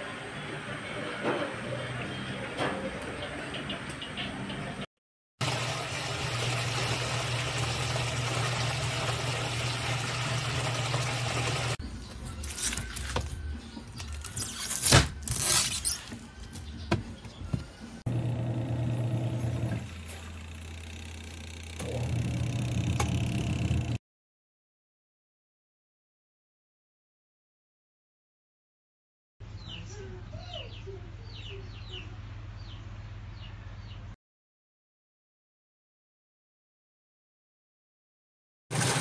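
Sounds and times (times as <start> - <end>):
washing machine motor hum: 5.4 - 11.8, 16.8 - 24.0, 38.7 - 39.0
water churning in tub: 5.4 - 11.8.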